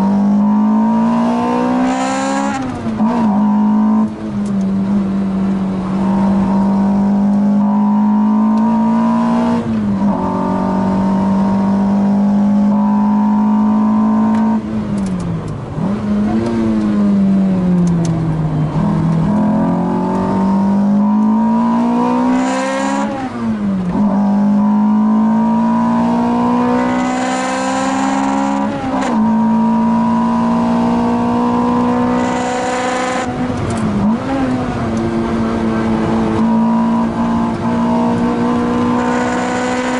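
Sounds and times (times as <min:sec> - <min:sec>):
car engine revving high: 0:00.0 - 0:39.9.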